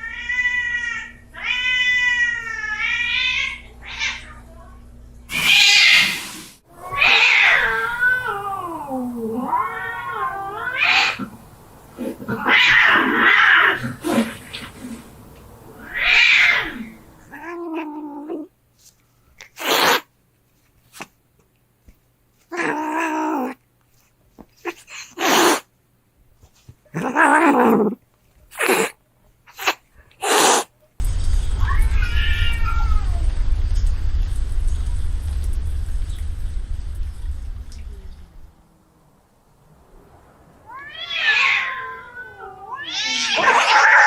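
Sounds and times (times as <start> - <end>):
cats yowling and growling: 0.0 - 4.4, 5.3 - 11.4, 12.0 - 15.0, 15.8 - 18.5, 22.5 - 23.6, 26.9 - 30.7, 40.6 - 44.0
cats hissing and spitting: 5.3 - 18.5, 19.4 - 20.1, 22.4 - 25.7, 26.6 - 30.7.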